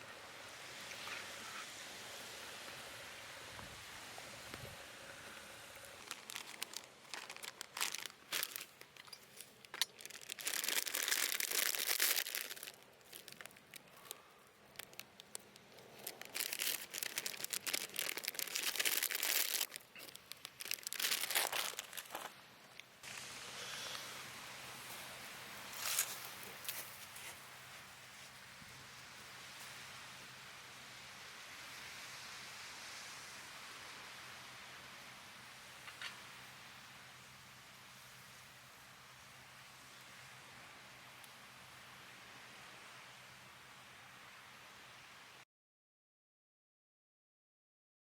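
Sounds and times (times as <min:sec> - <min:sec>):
faint steady hiss: 0:00.0 - 0:45.4
plastic packaging crinkling: 0:05.8 - 0:22.3.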